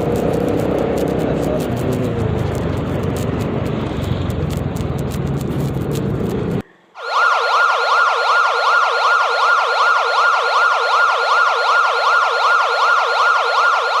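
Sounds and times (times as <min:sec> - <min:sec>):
road noise: 0:00.0 - 0:07.0
electronic yelp siren: 0:07.0 - 0:14.0.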